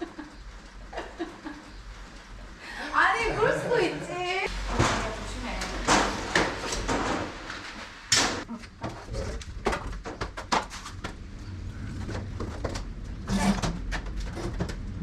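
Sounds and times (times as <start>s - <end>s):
demolition knocks and bangs: 4.6s - 7.5s.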